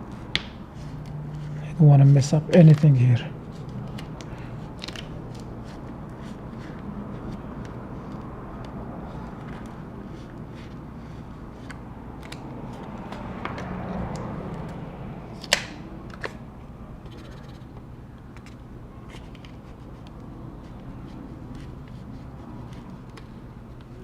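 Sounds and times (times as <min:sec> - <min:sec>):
steady low hum: 0:00.0 - 0:24.0
sharp plastic snap: 0:15.4 - 0:16.4.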